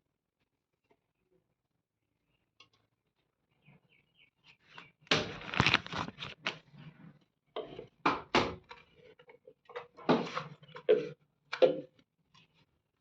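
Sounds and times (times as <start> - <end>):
packaging rustling and scraping: 5.1 - 7.1.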